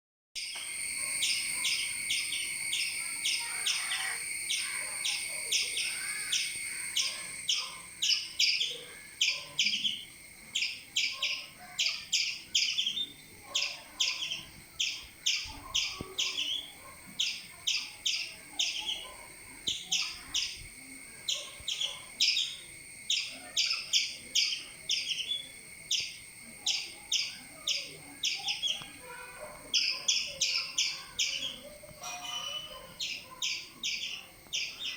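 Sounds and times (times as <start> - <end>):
squirrel alarm chirps: 0.4 - 10.0, 21.3 - 34.9.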